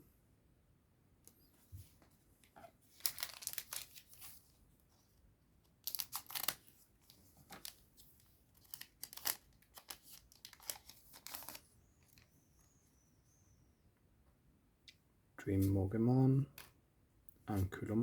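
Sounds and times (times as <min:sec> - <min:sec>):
foil wrapper tearing and crinkling: 0:02.9 - 0:04.4, 0:05.8 - 0:06.7, 0:08.5 - 0:11.6.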